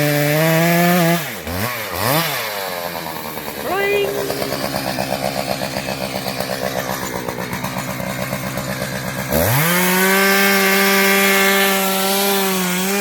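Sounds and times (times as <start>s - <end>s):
chainsaw idling and revving: 0.0s - 13.0s.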